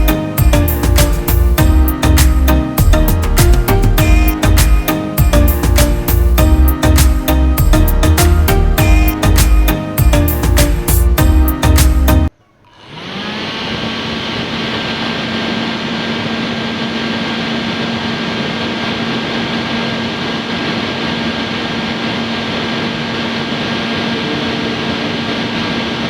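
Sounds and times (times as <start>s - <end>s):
small electric fan running: 12.6s - 26.0s.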